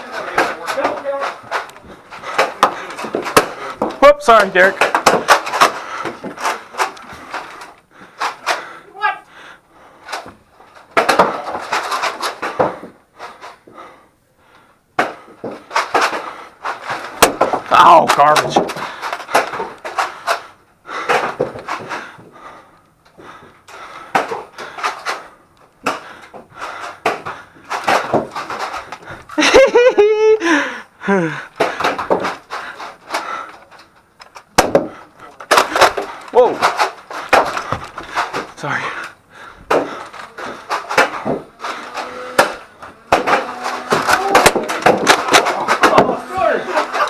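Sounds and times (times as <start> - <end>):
sharp knocks and clatter: 0.0 - 8.8, 10.1 - 13.6, 15.0 - 22.5, 23.2 - 29.7, 31.6 - 47.0
person shouting or crying: 8.9 - 9.3, 44.0 - 44.7, 45.9 - 47.0.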